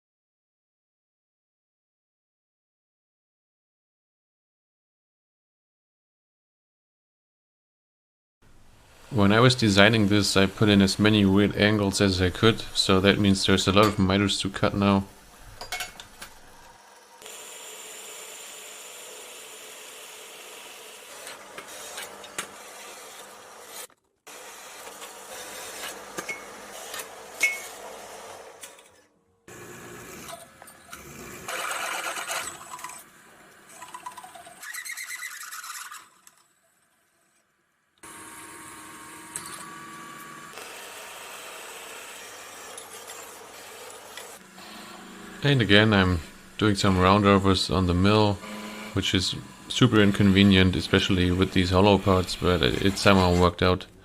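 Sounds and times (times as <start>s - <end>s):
power saw cutting steel: 16.3s - 33.4s, 38.0s - 53.7s.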